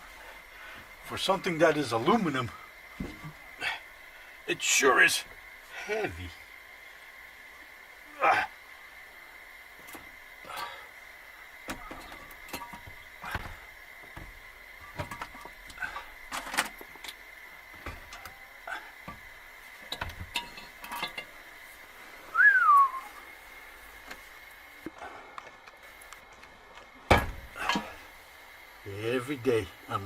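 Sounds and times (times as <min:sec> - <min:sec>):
short falling whistle: 0:22.3 - 0:23.2.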